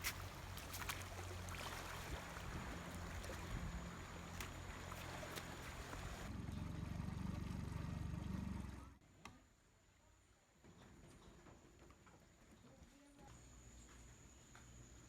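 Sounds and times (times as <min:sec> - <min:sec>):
boat motor humming: 0:00.0 - 0:09.0.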